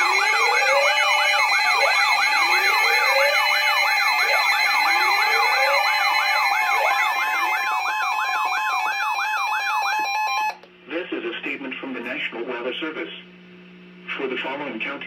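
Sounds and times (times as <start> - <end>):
emergency alert siren tone: 0.0 - 10.6
steady held tones: 0.0 - 10.6.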